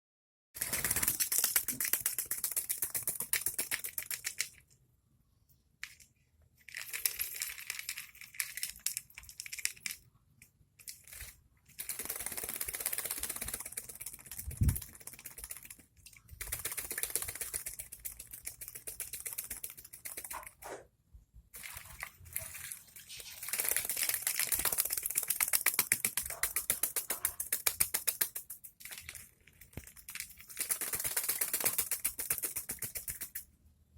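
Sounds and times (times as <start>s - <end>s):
parrot wings fluttering: 0.6s - 4.4s, 11.2s - 20.6s, 22.8s - 29.2s, 29.8s - 33.4s.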